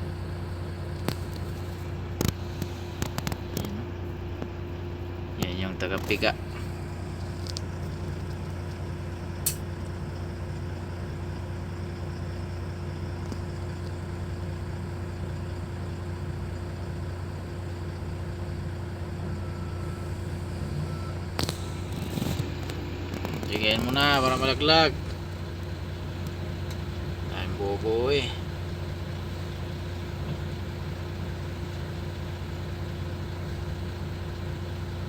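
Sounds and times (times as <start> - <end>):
heavy engine and machinery droning: 0.0 - 35.0
sharp click: 9.4 - 9.6.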